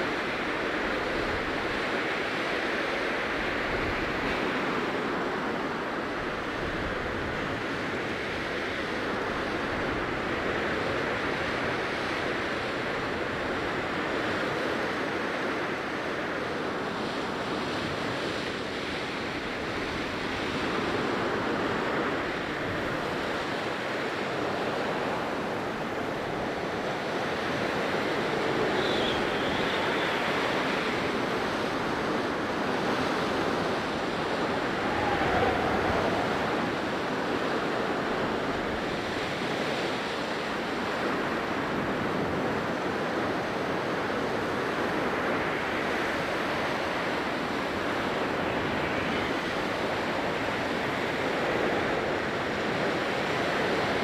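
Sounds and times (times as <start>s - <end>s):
blizzard wind blowing hard: 25.6s - 43.6s
faint high whistle: 27.5s - 32.2s, 33.9s - 38.3s.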